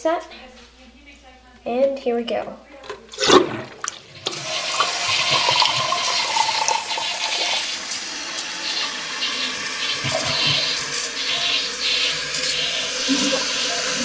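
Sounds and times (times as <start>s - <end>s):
toilet flushing: 3.1s - 14.0s.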